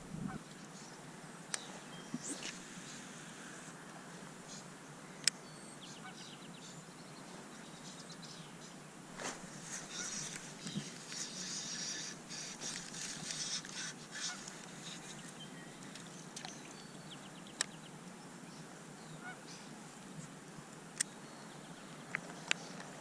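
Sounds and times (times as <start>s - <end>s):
geese honking: 9.8s - 10.4s.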